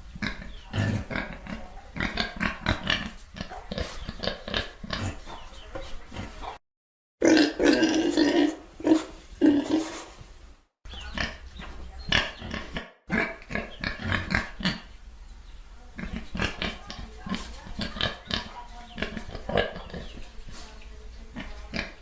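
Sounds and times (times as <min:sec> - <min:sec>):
pigs grunting and oinking: 0:00.2 - 0:06.6, 0:07.2 - 0:10.0, 0:10.9 - 0:14.9, 0:15.9 - 0:20.3, 0:21.3 - 0:22.0.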